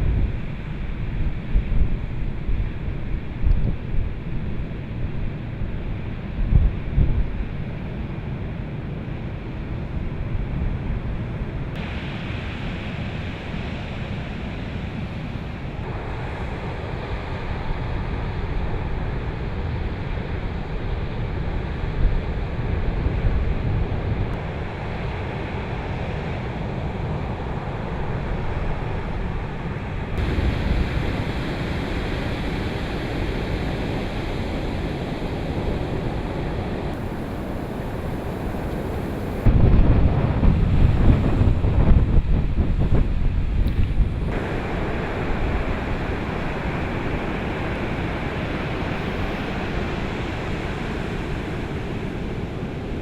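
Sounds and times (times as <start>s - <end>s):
wind buffeting microphone: 0.0s - 53.0s
sea waves breaking: 11.8s - 53.0s.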